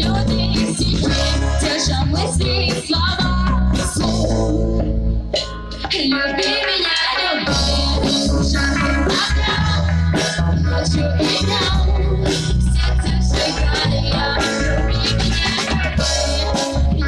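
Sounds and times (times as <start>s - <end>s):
live pop-rock band playing: 0.0s - 17.0s
person singing: 5.8s - 17.0s.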